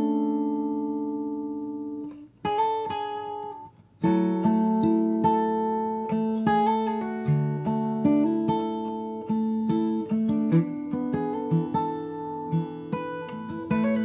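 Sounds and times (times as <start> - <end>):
acoustic guitar chords and plucked notes: 0.0 - 14.0.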